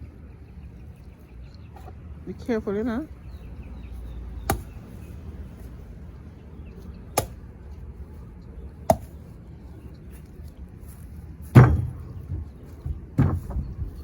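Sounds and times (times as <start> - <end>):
chopping blows into tree trunk: 4.5 - 4.7, 8.9 - 9.1.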